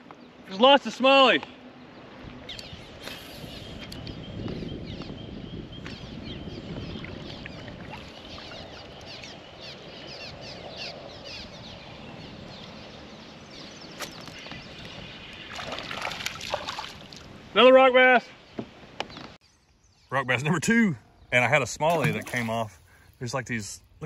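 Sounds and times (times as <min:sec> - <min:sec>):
water lapping and trickling: 0:06.6 - 0:11.9, 0:13.5 - 0:17.5, 0:21.6 - 0:23.7.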